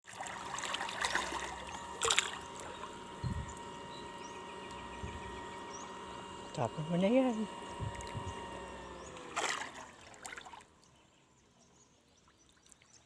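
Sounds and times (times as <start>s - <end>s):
water splashing and trickling: 0.0s - 3.8s, 9.1s - 11.0s, 12.2s - 13.0s.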